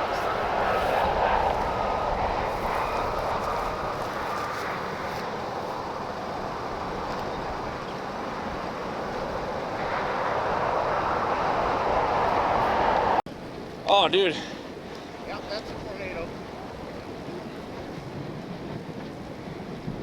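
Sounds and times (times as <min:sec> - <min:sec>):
vehicle road and wind noise: 0:00.0 - 0:20.0.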